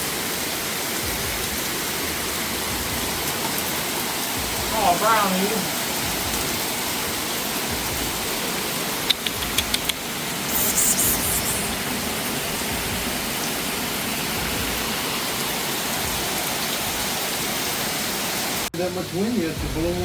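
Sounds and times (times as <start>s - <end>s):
rain falling: 0.0s - 20.0s
sharp clicks: 9.1s - 11.8s.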